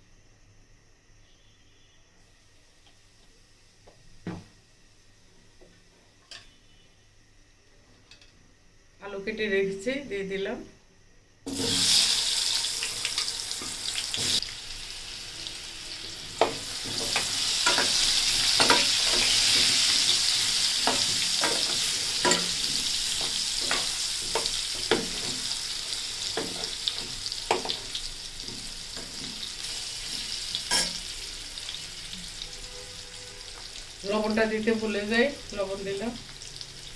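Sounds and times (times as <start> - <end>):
potatoes sizzling in hot oil: 11.5 - 36.9.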